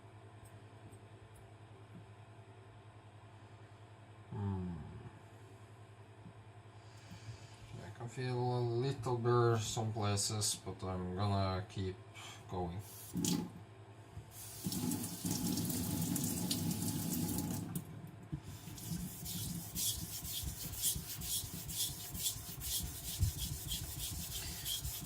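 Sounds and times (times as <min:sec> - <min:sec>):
knife scraping on whetstone: 0:18.6 - 0:25.0.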